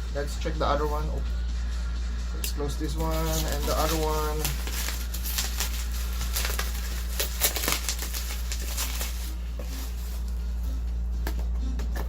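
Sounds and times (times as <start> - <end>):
steady low hum: 0.0 - 12.0
cardboard packaging rustling: 2.8 - 10.7.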